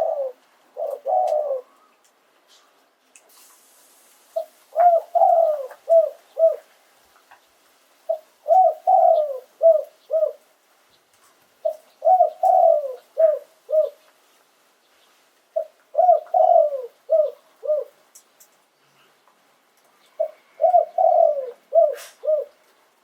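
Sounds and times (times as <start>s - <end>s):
dove cooing: 0.0s - 1.9s, 4.4s - 6.7s, 8.1s - 10.5s, 11.6s - 14.1s, 15.5s - 18.0s, 20.2s - 22.7s.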